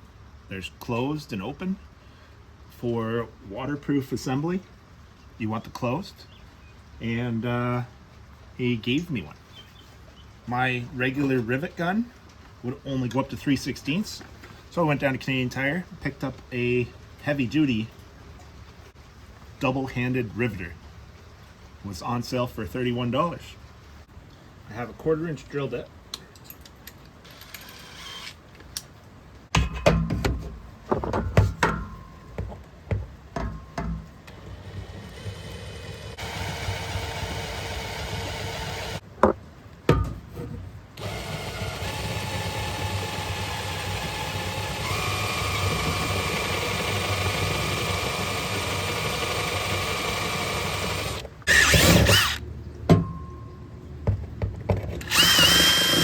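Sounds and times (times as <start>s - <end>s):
electric drill drilling aluminum: 27.3s - 28.4s, 34.3s - 39.0s, 41.0s - 52.4s, 55.0s - 56.0s
tools clattering and knocking: 29.5s - 34.4s, 39.2s - 40.7s, 52.9s - 55.1s.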